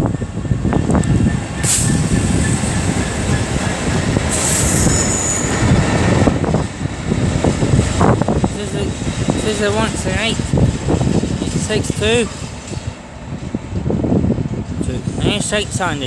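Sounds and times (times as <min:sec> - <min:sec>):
freight train rumbling and rattling: 0:00.0 - 0:16.0
wheel squeal: 0:04.4 - 0:05.7.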